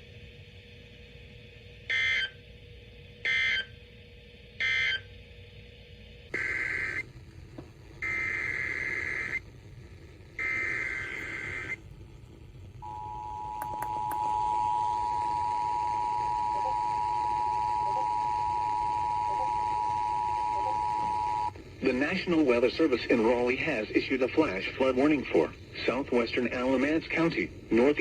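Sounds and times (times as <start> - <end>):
digital data bursts: 6.4 - 7.0, 8.0 - 9.4, 10.4 - 11.8
two-tone attention signal: 12.8 - 21.5.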